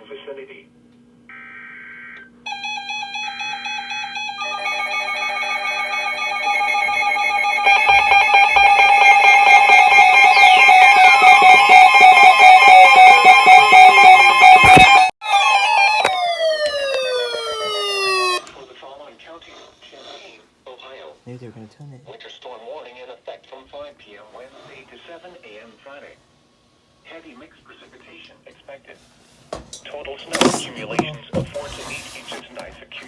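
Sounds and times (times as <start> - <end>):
falling pitch glides: 6.3 - 18.5
screeching data bursts: 7.3 - 15.0.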